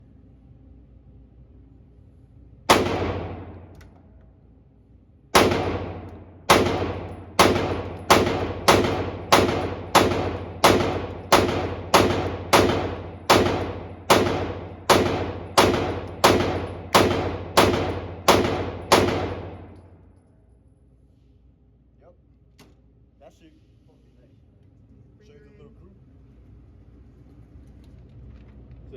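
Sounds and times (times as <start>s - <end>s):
pistol shots echoing: 2.7s - 3.8s, 5.4s - 19.9s.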